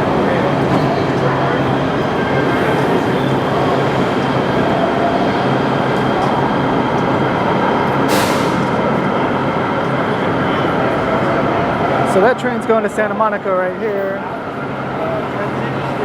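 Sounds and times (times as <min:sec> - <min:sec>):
train rumbling: 0:00.0 - 0:16.0
short sharp hiss: 0:08.1 - 0:08.7.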